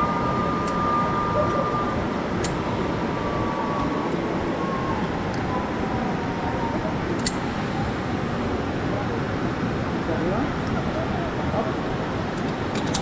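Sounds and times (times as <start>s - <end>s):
zipline trolley on cable: 0.0s - 9.2s, 12.3s - 13.0s
trolley clicks: 12.4s - 13.0s.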